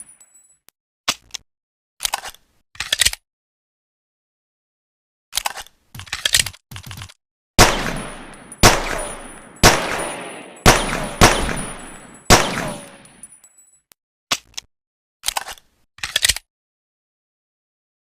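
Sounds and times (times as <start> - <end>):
pistol gunshots echoing: 7.6 - 13.2.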